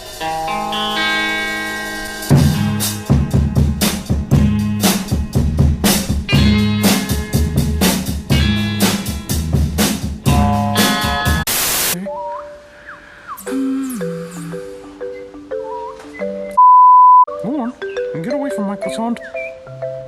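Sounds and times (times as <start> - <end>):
loud music with drums and guitar: 0.0 - 11.5
burst of hiss: 11.5 - 12.0.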